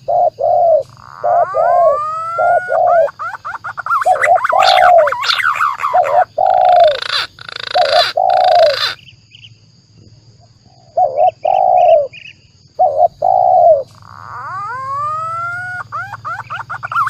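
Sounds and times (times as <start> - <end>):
doves cooing: 0.0 - 9.0, 10.8 - 12.1, 12.8 - 17.0
high rasping bird call: 0.0 - 9.0, 12.8 - 17.0.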